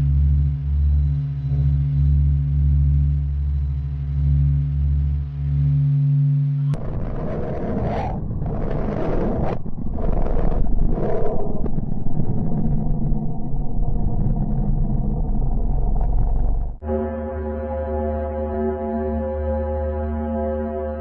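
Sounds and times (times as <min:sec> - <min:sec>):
rough noisy rumble: 0:00.0 - 0:16.9
deep pulsing hum: 0:00.0 - 0:21.0.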